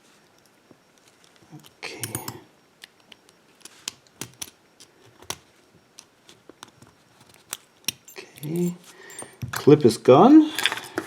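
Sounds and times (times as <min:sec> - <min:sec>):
padlock metal clicks: 0:01.6 - 0:05.4, 0:07.5 - 0:08.7.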